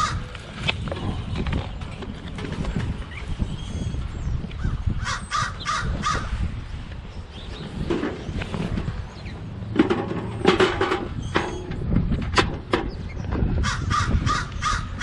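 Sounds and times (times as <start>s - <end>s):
crows cawing: 0.0s - 0.3s, 4.7s - 6.4s, 13.6s - 15.0s.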